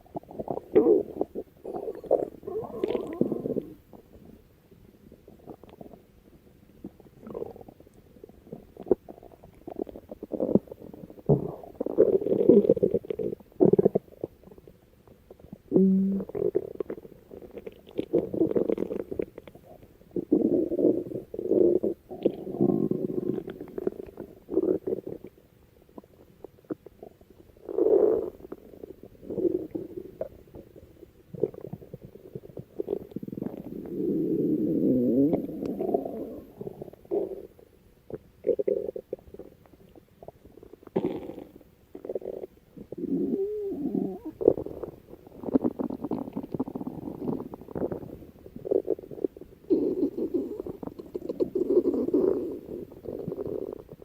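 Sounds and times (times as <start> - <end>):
stomach growling: 0.0 - 4.4, 5.0 - 6.1, 6.8 - 54.0.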